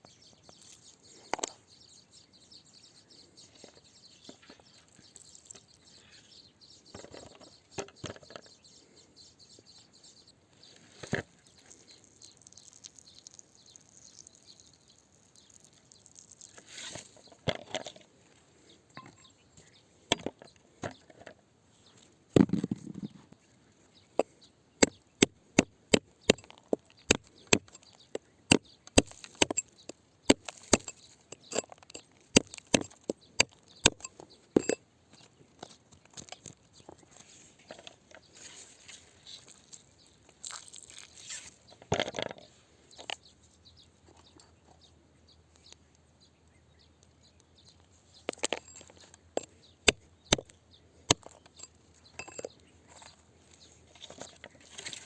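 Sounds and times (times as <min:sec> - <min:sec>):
rock and dirt scraping: 0:10.6 - 0:18.2, 0:24.2 - 0:44.4, 0:47.6 - 0:55.0
digging tool striking rock: 0:24.2 - 0:34.8, 0:48.3 - 0:52.5.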